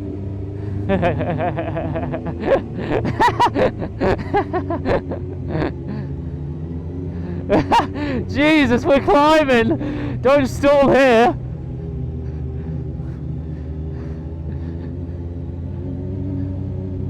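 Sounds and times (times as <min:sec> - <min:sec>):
motorcycle engine at low revs: 0:00.0 - 0:17.0
person talking: 0:07.5 - 0:11.4.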